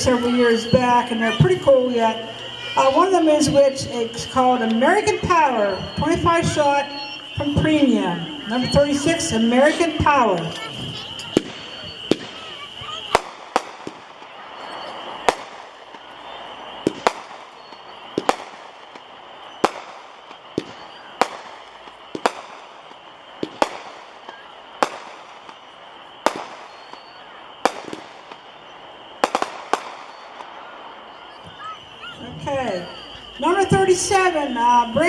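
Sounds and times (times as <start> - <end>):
firework cake bangs: 10.2 - 32.1.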